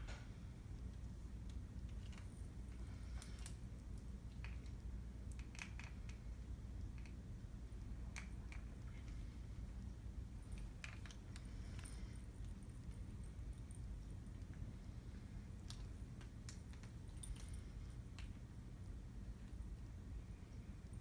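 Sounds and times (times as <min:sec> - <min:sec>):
low steady hum: 0:00.0 - 0:21.0
hair rustling and clicks: 0:00.8 - 0:07.3, 0:10.3 - 0:14.7, 0:15.5 - 0:18.4.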